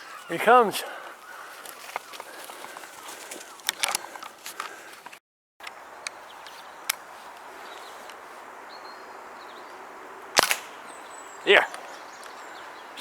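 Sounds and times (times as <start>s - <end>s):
high bird call: 0.0s - 4.2s.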